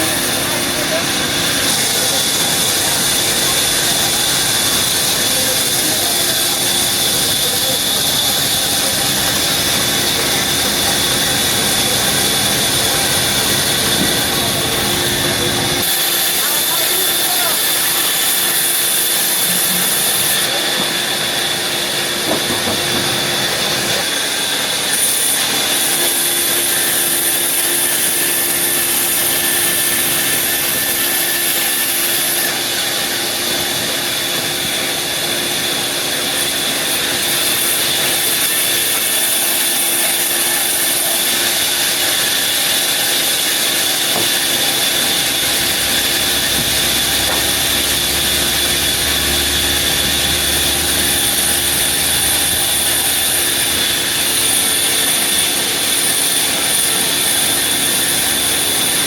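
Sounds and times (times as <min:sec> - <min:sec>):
high steady machine whine: 0:00.0 - 0:59.0
sawmill machinery running: 0:00.0 - 0:59.0.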